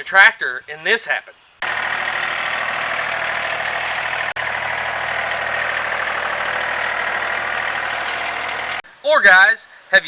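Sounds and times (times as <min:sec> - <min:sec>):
tractor engine running: 0:01.6 - 0:08.8.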